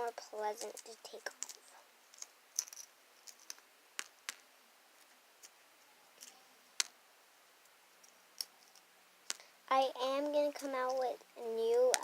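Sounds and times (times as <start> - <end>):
small clicks of foam beads: 8.0 - 9.5.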